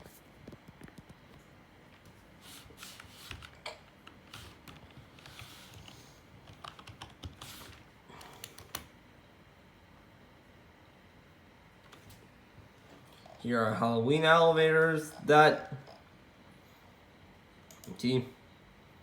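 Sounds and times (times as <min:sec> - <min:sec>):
typing on computer keyboard: 0:06.4 - 0:07.5, 0:08.2 - 0:08.9.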